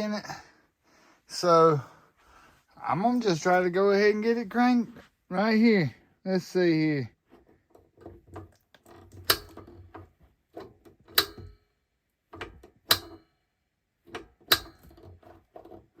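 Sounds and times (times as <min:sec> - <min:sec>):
piezo igniter clicking: 0:09.2 - 0:09.7, 0:11.0 - 0:11.6, 0:12.4 - 0:13.2, 0:14.1 - 0:15.0.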